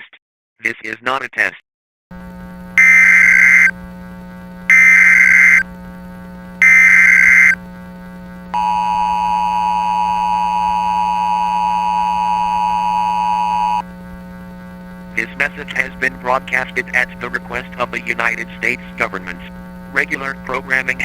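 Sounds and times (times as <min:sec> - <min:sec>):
low steady hum: 0:02.2 - 0:21.0
short digital data bursts: 0:02.8 - 0:03.7, 0:04.7 - 0:05.6, 0:06.6 - 0:07.6
two-tone attention signal: 0:02.8 - 0:03.7, 0:04.7 - 0:05.6, 0:06.6 - 0:07.6, 0:08.6 - 0:13.8.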